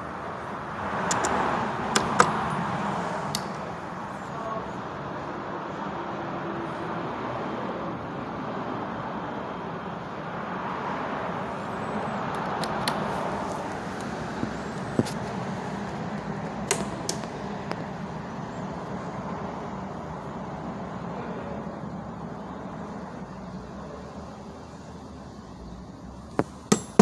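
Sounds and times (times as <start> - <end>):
steady background noise: 0.0 - 27.0
sharp clicks and clinks: 26.4 - 27.0.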